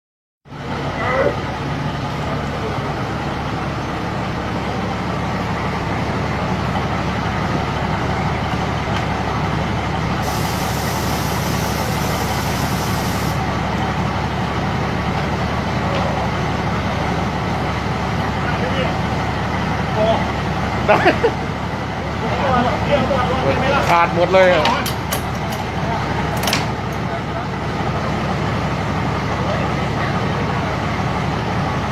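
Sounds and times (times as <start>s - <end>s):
sharp high hiss: 10.2s - 13.4s.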